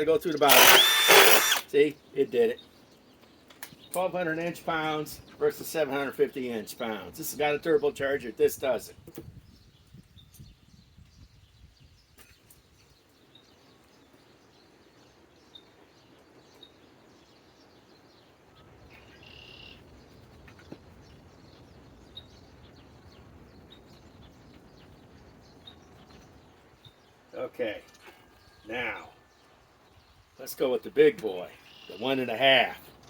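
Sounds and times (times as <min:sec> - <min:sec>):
faint bird chirps: 0:31.4 - 0:32.3.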